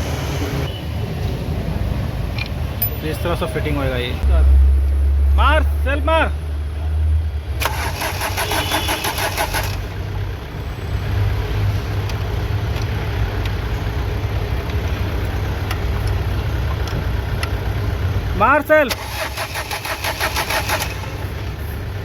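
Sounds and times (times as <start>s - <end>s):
engine rumbling: 0.0s - 22.0s
diesel engine cranking: 7.2s - 22.0s.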